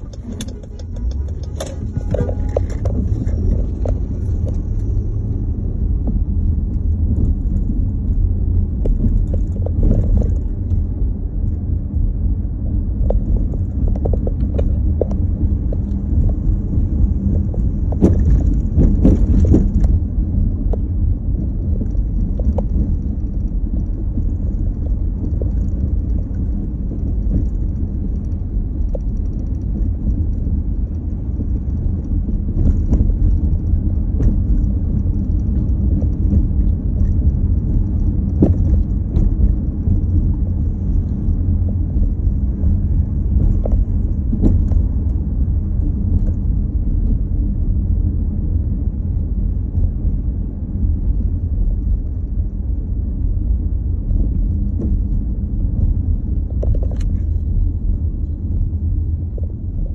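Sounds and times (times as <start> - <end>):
light rattles: 0.0 - 11.6
vehicle rumbling on road: 0.0 - 59.9.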